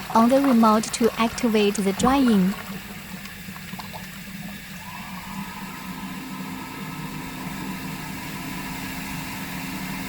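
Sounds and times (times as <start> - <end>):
air dryer blower whirring: 4.7 - 10.0.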